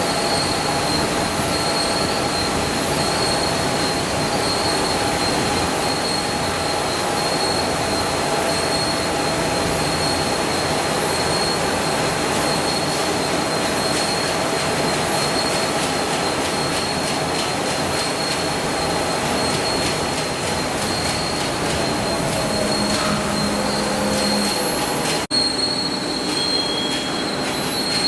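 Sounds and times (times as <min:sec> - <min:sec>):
low machine whines: 0:18.0 - 0:28.0
high squealing tone: 0:19.3 - 0:28.0.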